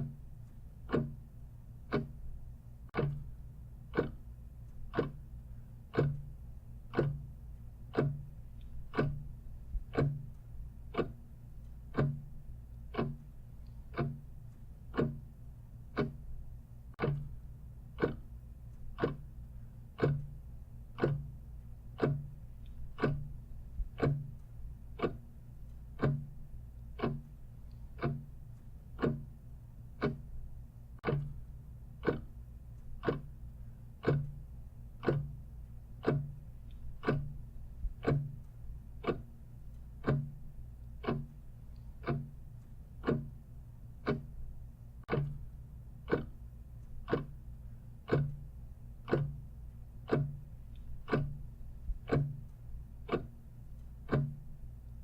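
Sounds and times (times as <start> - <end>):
clock ticking: 0.0 - 55.0
faint low hum: 0.0 - 55.0.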